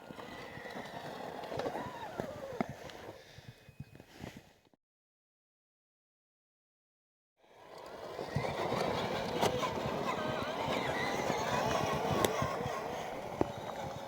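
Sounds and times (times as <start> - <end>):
electric motor and gearbox whine: 0.0 - 4.0, 7.5 - 14.0.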